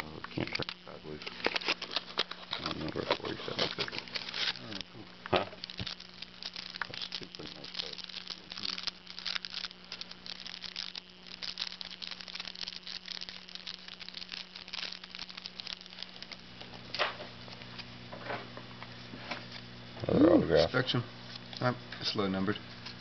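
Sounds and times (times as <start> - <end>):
steady low hum: 0.0 - 23.0
packaging crinkling and rustling: 0.3 - 17.9.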